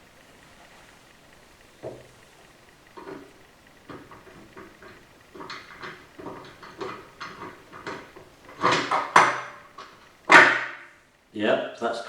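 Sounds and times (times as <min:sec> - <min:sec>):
metal clunk: 0:01.6 - 0:11.1.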